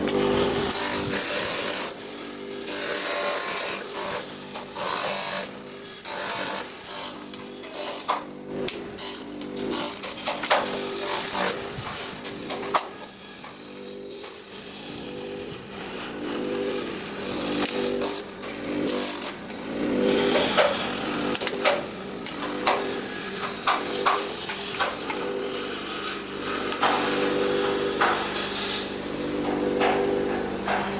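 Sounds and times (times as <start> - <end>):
electric power tool running: 0.0 - 30.9
wood rasping against sander: 8.7 - 30.9.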